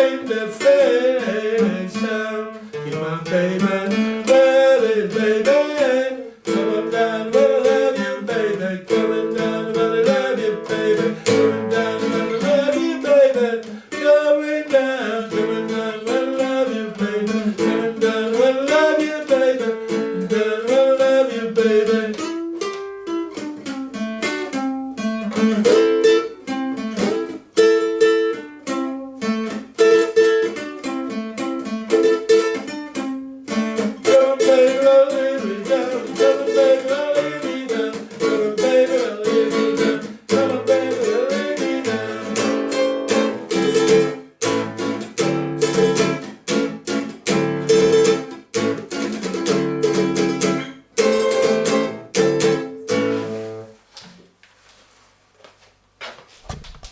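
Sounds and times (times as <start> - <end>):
person singing: 0.0 - 22.5, 33.5 - 44.2
strummed string instrument: 0.0 - 53.8.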